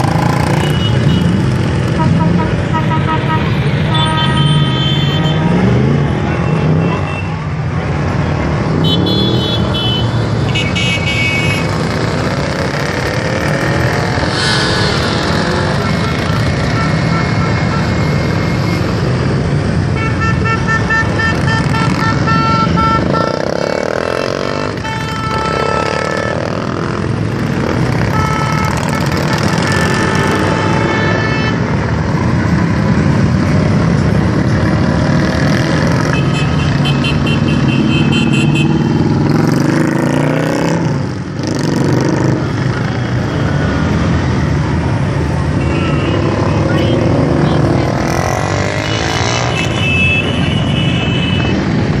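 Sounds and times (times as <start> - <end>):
motorcycle engines running: 0.0 - 2.7, 11.6 - 16.9
horns honking: 0.2 - 7.7, 8.7 - 12.2, 13.1 - 27.0, 27.9 - 31.9, 35.3 - 39.6, 45.4 - 52.0.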